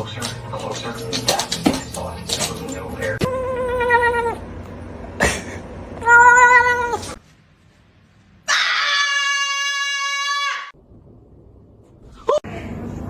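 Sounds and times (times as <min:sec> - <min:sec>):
cat meowing and yowling: 0:03.2 - 0:04.4, 0:06.0 - 0:07.2.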